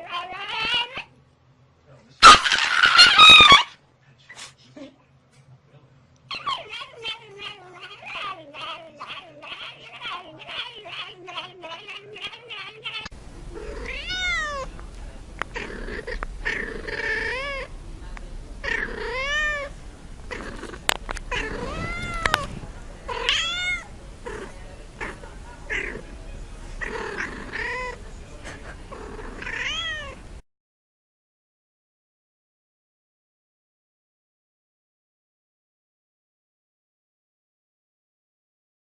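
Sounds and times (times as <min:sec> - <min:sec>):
cat meowing: 0:06.3 - 0:14.7, 0:15.6 - 0:17.7, 0:18.6 - 0:19.7, 0:21.3 - 0:22.5, 0:23.1 - 0:23.9, 0:29.3 - 0:30.2.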